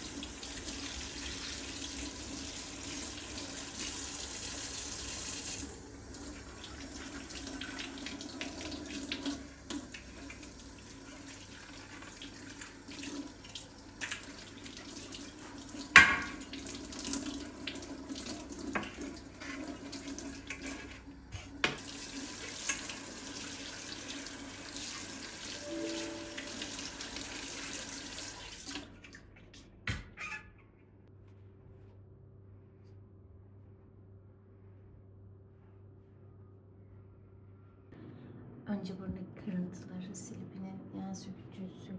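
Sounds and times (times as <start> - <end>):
tap water running into sink: 0.0 - 29.2.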